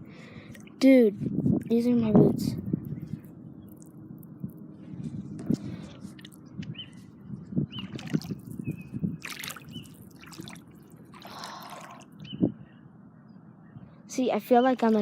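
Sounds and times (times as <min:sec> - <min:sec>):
wading through floodwater: 0:07.8 - 0:12.2.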